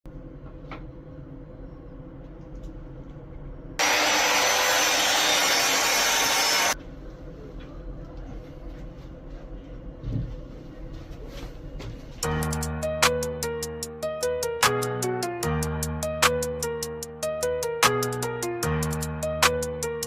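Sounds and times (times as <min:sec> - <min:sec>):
tool working wood: 0:03.8 - 0:06.8.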